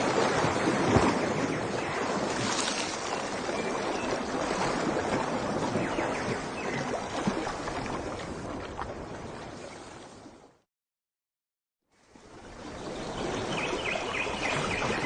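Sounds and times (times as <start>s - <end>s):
faint splashes: 0.0s - 10.1s
rushing water: 0.0s - 10.5s, 12.0s - 15.0s.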